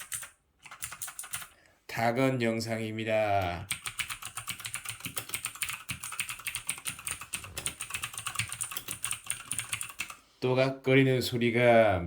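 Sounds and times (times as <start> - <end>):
fast typing on clicky keyboard: 0.0 - 1.5, 3.7 - 10.2.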